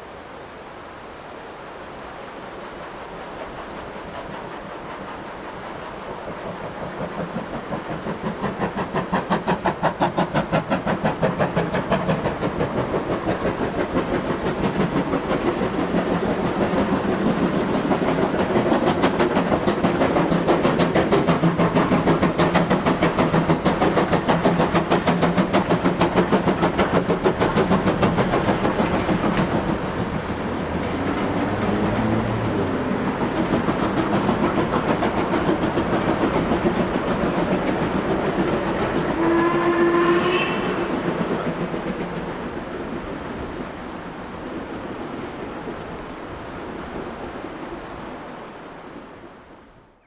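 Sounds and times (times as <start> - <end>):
steam locomotive exhaust beats: 1.9 - 50.0.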